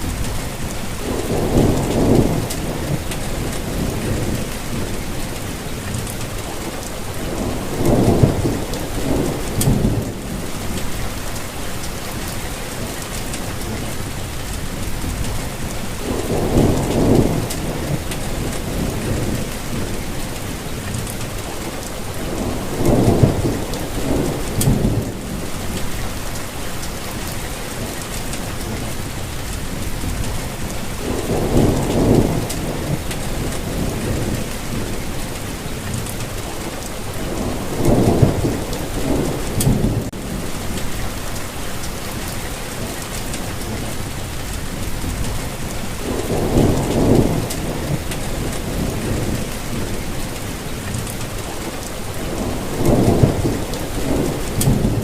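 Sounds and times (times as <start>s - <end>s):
low thunder rumbling: 0.0s - 55.0s
rain hissing: 0.0s - 55.0s.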